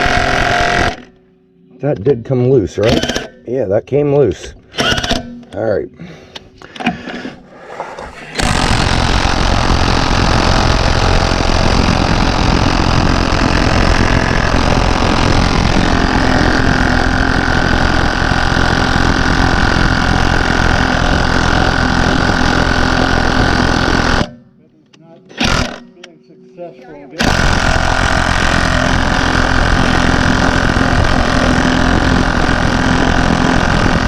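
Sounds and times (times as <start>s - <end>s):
impact wrench hammering: 0.0s - 1.2s, 2.8s - 3.4s, 4.7s - 5.5s, 8.4s - 24.4s, 25.3s - 26.0s, 27.2s - 34.0s.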